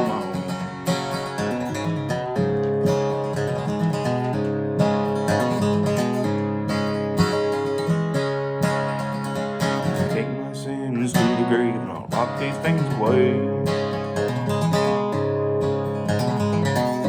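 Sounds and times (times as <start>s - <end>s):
acoustic guitar strumming: 0.0s - 17.0s
bending guitar melody: 0.0s - 17.0s.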